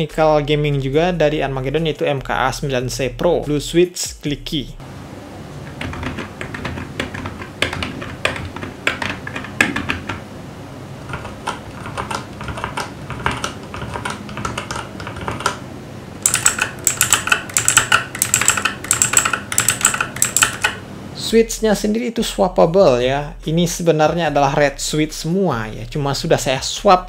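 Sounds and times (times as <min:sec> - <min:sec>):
clicky mechanical keyboard typing: 0:05.6 - 0:10.2, 0:11.0 - 0:15.6, 0:16.2 - 0:20.8
typing on keyboard: 0:05.6 - 0:10.2, 0:11.0 - 0:15.6, 0:16.2 - 0:20.8.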